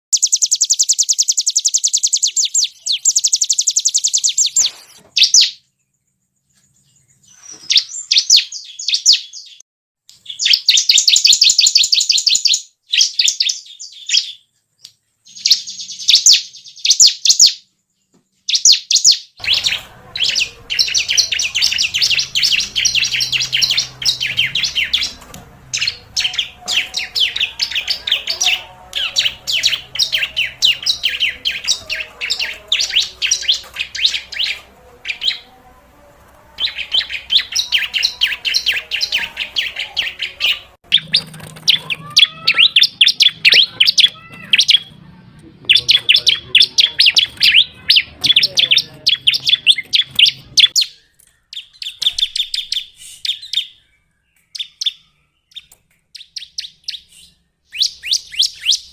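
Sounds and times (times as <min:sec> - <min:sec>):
bird chattering trills: 0:00.1 - 0:05.6, 0:18.5 - 0:35.5, 0:36.6 - 0:53.8.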